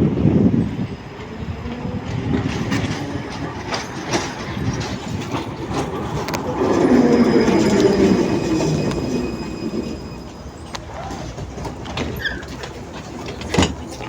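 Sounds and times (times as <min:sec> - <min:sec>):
tram rumbling on track: 0:00.0 - 0:14.0
wheels clicking over rails: 0:01.0 - 0:14.0.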